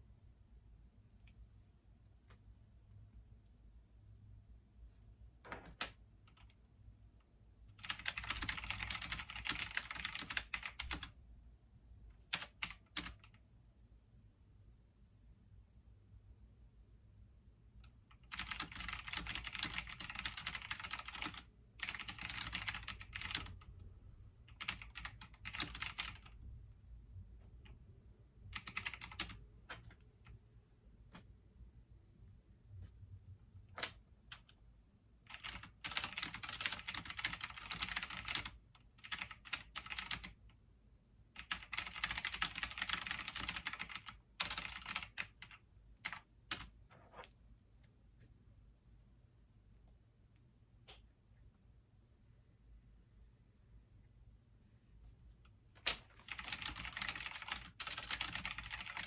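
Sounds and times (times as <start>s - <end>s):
faint low hum: 0.0s - 59.0s
computer keyboard typing: 7.7s - 11.2s, 12.3s - 13.4s, 18.1s - 23.8s, 24.5s - 26.4s, 28.5s - 30.0s, 35.3s - 40.4s, 41.4s - 46.8s, 55.8s - 59.0s.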